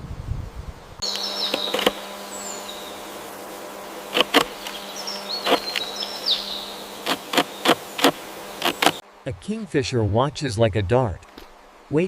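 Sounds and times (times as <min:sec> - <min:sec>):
insect-like buzz: 0:00.2 - 0:09.3
sharp clicks: 0:01.1 - 0:02.0, 0:04.1 - 0:04.8, 0:05.4 - 0:05.9, 0:07.0 - 0:09.0.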